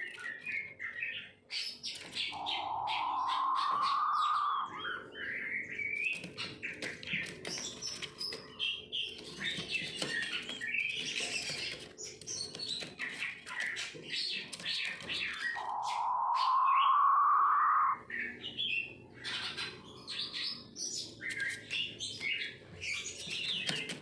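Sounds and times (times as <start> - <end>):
quails chirping and whistling: 0.0 - 11.5, 12.3 - 24.0
long hoarse quail note: 2.4 - 4.8, 15.6 - 18.0.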